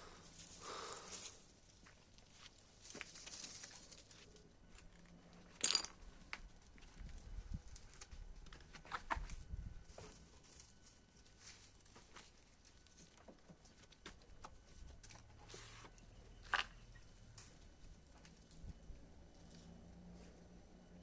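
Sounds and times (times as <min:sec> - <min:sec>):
cats tapping and rustling: 0:01.1 - 0:05.0, 0:06.4 - 0:15.7.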